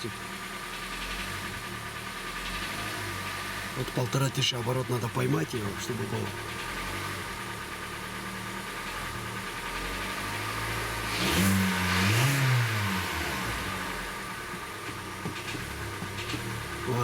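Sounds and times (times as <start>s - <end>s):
engine knock: 0.0s - 11.1s, 13.4s - 17.0s
car engine idling and revving: 0.0s - 17.0s.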